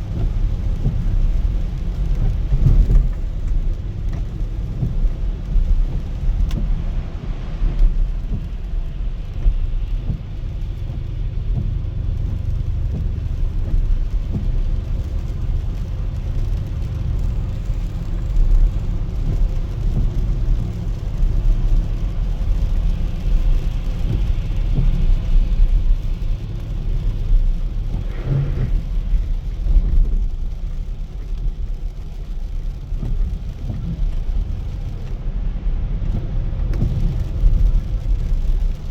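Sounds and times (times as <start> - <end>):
car engine and tyres rumbling: 0.0 - 38.9.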